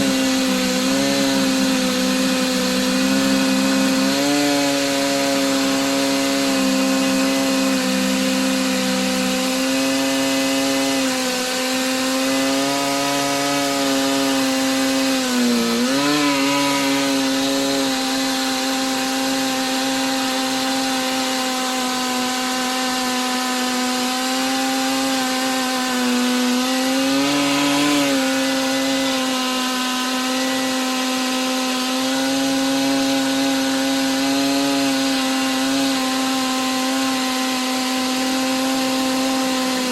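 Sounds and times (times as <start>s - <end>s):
chainsaw cutting through log: 0.0s - 39.9s.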